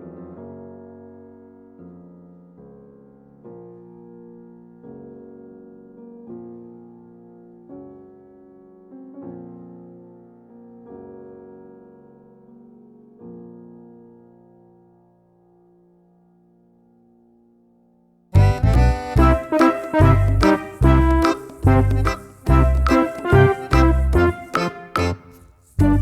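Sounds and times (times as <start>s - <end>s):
soft piano chords: 18.4s - 26.0s.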